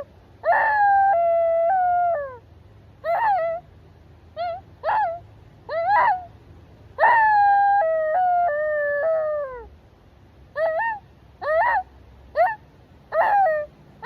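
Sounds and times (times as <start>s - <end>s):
person imitating fox yelps: 0.0s - 2.4s, 3.0s - 3.7s, 4.4s - 6.3s, 7.0s - 9.7s, 10.5s - 13.7s.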